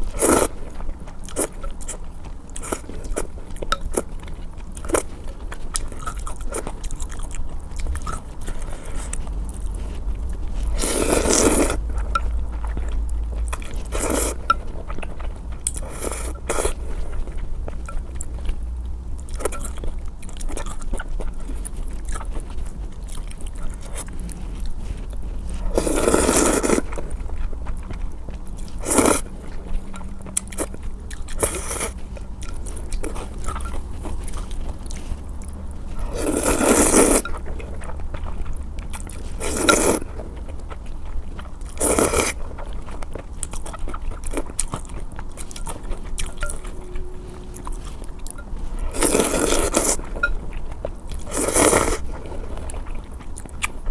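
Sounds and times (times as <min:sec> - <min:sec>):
chewing with wet clicks: 0:00.0 - 0:53.9
loud noodle slurps: 0:10.7 - 0:11.8, 0:25.7 - 0:26.9, 0:36.1 - 0:37.2, 0:48.9 - 0:50.0.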